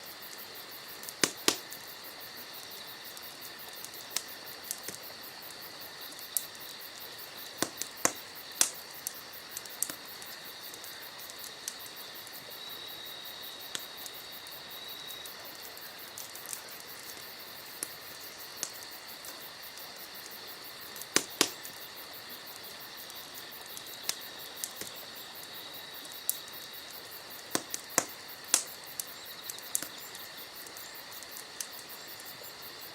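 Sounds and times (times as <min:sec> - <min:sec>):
crickets chirring: 0:00.0 - 0:32.9
sharp clicks and snaps: 0:01.0 - 0:01.9, 0:07.5 - 0:11.8, 0:21.0 - 0:21.8, 0:27.4 - 0:32.3.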